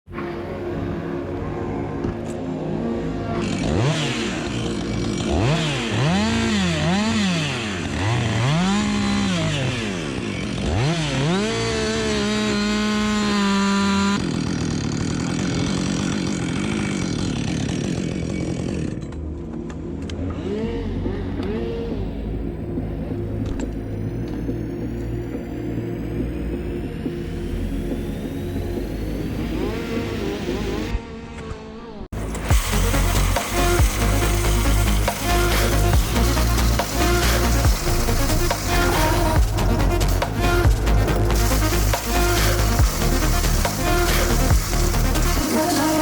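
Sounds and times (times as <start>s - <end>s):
chainsaw engine revving: 0.1s - 23.1s, 26.9s - 46.0s.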